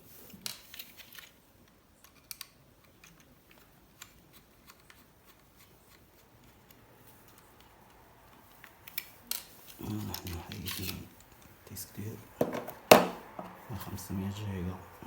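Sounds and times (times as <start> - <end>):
faint clicks and taps of handling: 0.2 - 11.6.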